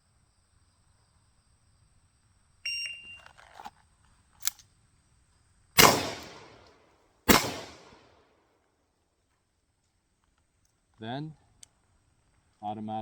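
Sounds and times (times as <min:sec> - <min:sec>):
shot timer beep: 0:02.7 - 0:03.2
revolver shots: 0:05.8 - 0:06.6, 0:07.3 - 0:08.0.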